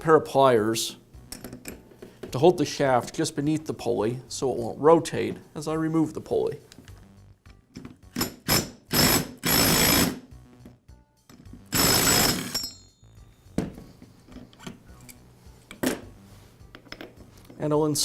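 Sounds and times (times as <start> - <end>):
ratchet wrench clicking: 11.7 - 12.8
short metallic ring: 12.2 - 13.2.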